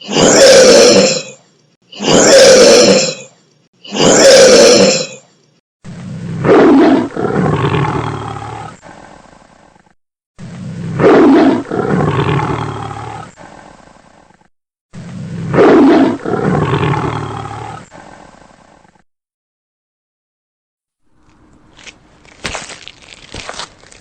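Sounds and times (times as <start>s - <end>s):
big cat roaring: 0.0s - 1.4s, 2.0s - 3.3s, 3.9s - 5.2s, 5.9s - 9.2s, 10.4s - 13.8s, 15.0s - 18.9s.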